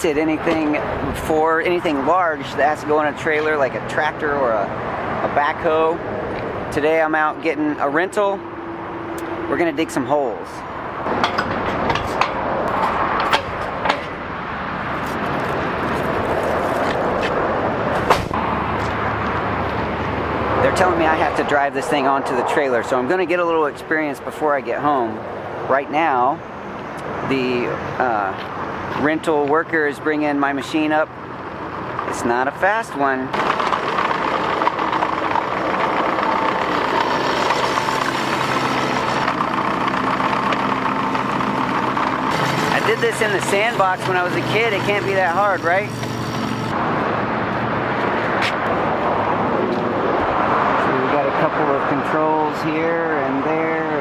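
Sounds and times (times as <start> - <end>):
vehicle noise: 0.0 - 54.0
diesel engine running: 33.4 - 48.1.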